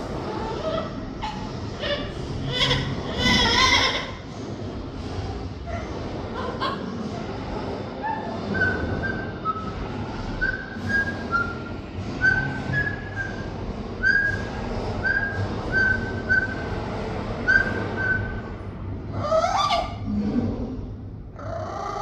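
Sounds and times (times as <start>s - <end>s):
parrot whistling: 8.1s - 9.8s, 10.4s - 13.4s, 14.0s - 16.7s, 17.5s - 18.4s.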